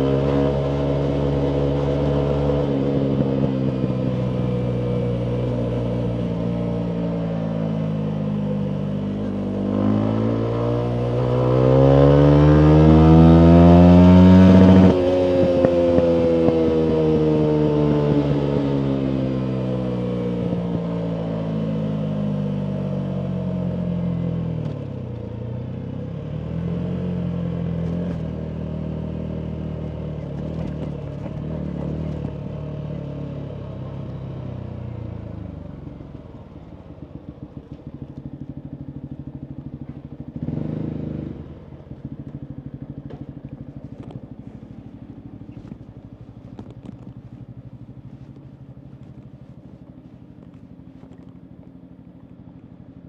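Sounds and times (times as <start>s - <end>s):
motorcycle engine revving: 0.0s - 53.0s
exhaust crackles: 42.2s - 53.0s.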